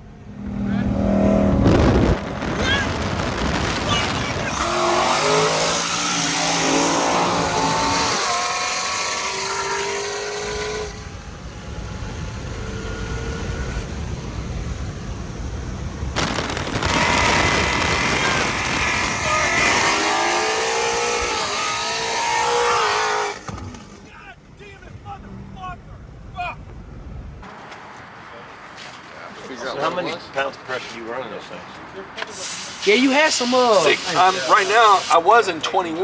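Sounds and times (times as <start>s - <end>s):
car engines revving: 0.0s - 24.1s.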